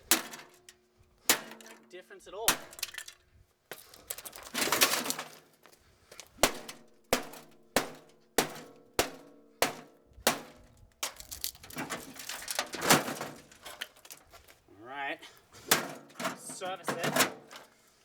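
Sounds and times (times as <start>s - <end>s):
hard strikes on metal casing: 6.4s - 11.3s
microwave crunching: 11.0s - 14.6s.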